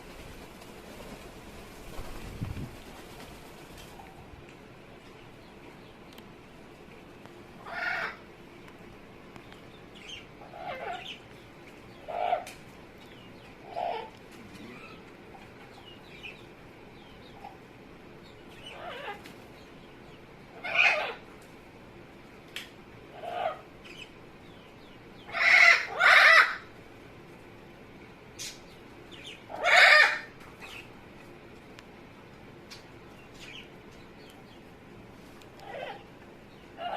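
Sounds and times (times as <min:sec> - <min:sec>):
parrot calls: 0:07.6 - 0:08.2, 0:10.0 - 0:11.2, 0:12.0 - 0:12.5, 0:13.6 - 0:15.0, 0:18.5 - 0:19.3, 0:20.5 - 0:21.3, 0:23.1 - 0:24.1, 0:25.2 - 0:26.7, 0:29.2 - 0:30.9, 0:35.6 - 0:36.1.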